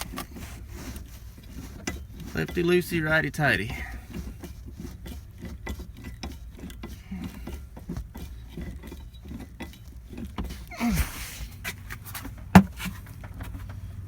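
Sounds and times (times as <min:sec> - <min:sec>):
small metal clicks and ticks: 0:00.0 - 0:10.7
metal scrape: 0:00.0 - 0:13.7.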